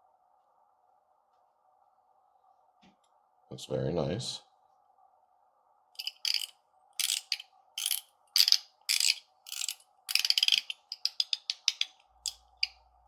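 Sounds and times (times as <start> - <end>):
fidget coin ratcheting clicks: 6.0 - 12.8.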